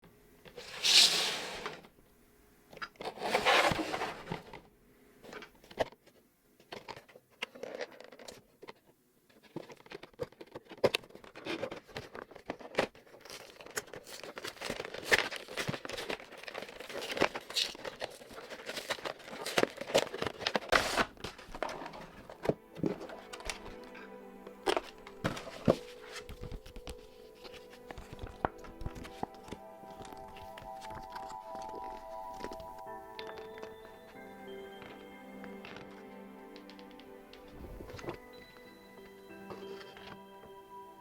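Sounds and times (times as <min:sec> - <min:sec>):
cardboard packaging clicks and scrapes: 0:02.9 - 0:04.7, 0:06.7 - 0:32.9
plastic crinkling: 0:06.7 - 0:38.7
plastic wrapping ripping: 0:09.8 - 0:22.2.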